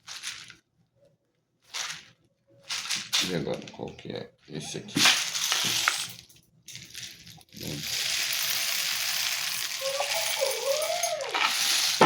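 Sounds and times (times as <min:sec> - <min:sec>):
kernels pouring in rain stick: 0:05.0 - 0:12.0
rain stick rattling: 0:05.0 - 0:12.0.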